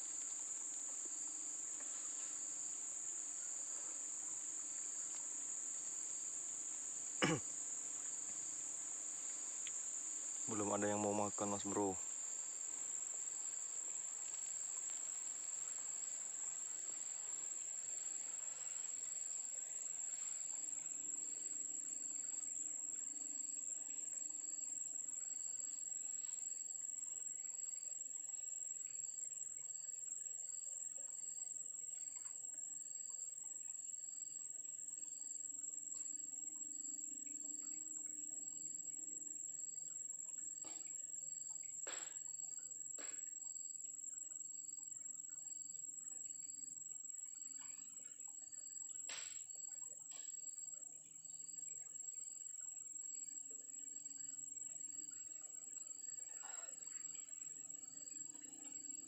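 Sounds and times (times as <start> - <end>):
insect chirping: 0.0 - 59.0
insect high-pitched drone: 0.0 - 59.0
faint clicks: 9.6 - 9.8.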